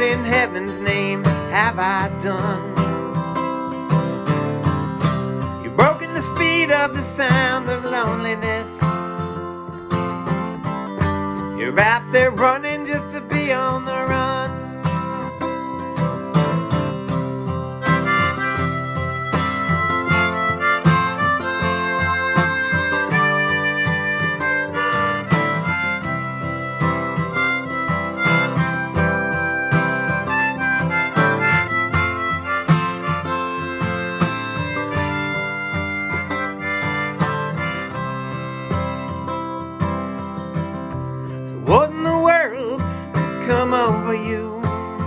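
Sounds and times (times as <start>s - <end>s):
strummed acoustic guitar: 0.0s - 45.0s
harmonica melody: 17.1s - 39.9s.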